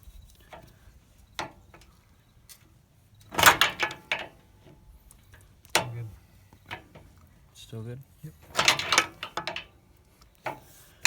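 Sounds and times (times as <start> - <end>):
metallic clanks: 3.3 - 7.2, 8.4 - 9.8.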